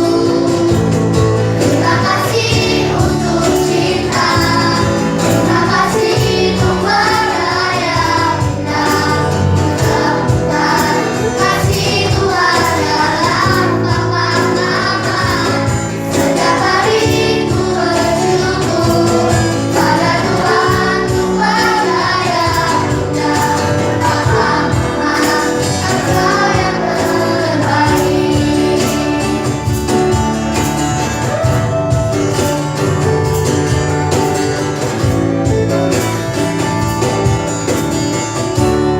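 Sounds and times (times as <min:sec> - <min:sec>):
young singers singing together: 0:00.0 - 0:29.9
instrumental accompaniment: 0:00.0 - 0:38.9.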